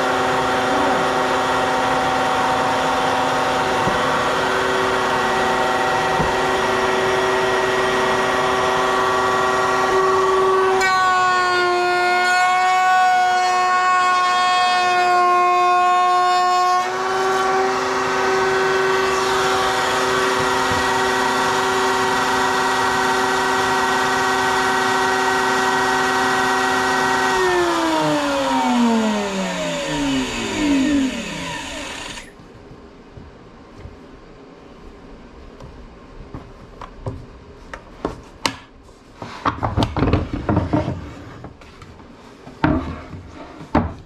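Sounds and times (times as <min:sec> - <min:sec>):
power tool motor whining: 0:17.7 - 0:32.3.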